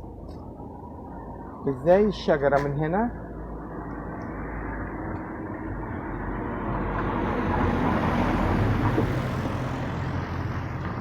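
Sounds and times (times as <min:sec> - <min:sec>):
motor vehicle passing: 0:03.5 - 0:11.0.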